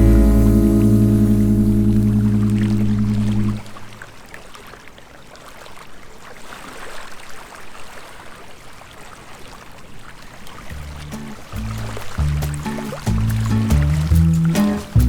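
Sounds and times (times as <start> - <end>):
sea waves washing onto shore: 0.0 - 4.0, 10.4 - 15.0.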